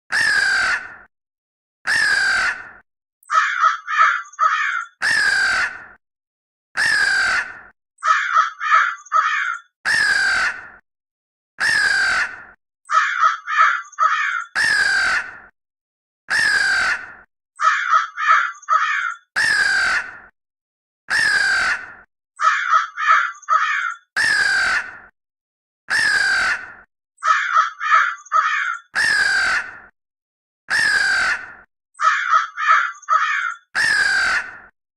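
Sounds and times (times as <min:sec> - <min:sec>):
crow cawing: 0:00.1 - 0:01.1, 0:01.9 - 0:06.0, 0:06.8 - 0:10.8, 0:11.6 - 0:15.5, 0:16.3 - 0:20.3, 0:21.1 - 0:25.1, 0:25.9 - 0:29.9, 0:30.7 - 0:34.7.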